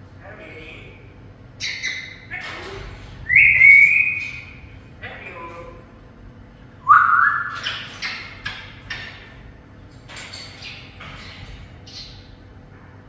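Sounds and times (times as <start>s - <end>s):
parrot squawking: 1.6s - 2.5s, 3.3s - 4.6s, 6.8s - 9.3s
parrot whistling: 3.3s - 4.5s, 6.8s - 8.2s.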